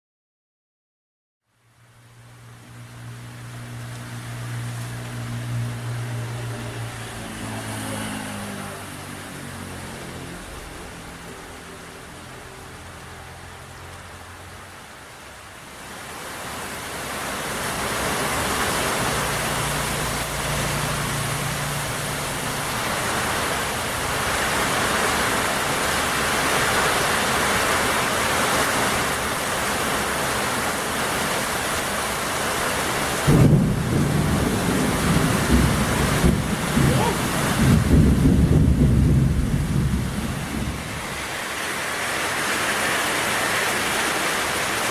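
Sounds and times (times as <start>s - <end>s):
heavy rain: 1.4s - 44.9s
low rumbling: 33.3s - 41.3s.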